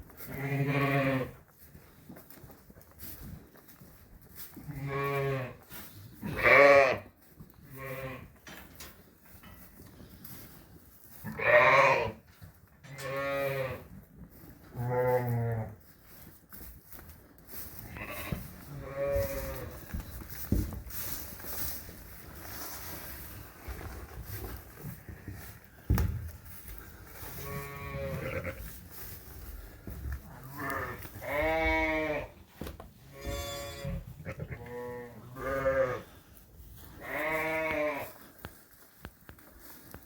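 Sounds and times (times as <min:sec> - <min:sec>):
sheep bleating: 0:06.2 - 0:07.0, 0:11.3 - 0:12.2, 0:30.3 - 0:32.3, 0:33.1 - 0:36.1, 0:37.0 - 0:38.1.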